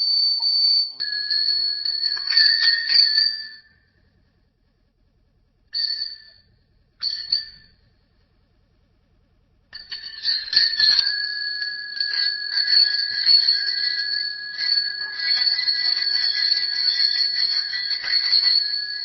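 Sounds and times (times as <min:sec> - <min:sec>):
bicycle bell ringing: 0:00.0 - 0:03.8, 0:05.7 - 0:07.8, 0:09.8 - 0:19.0.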